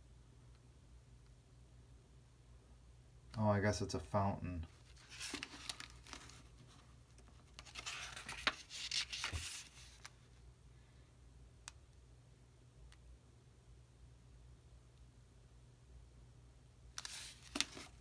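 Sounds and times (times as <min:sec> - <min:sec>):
paper pages rustling: 0:04.8 - 0:10.2, 0:17.0 - 0:18.0.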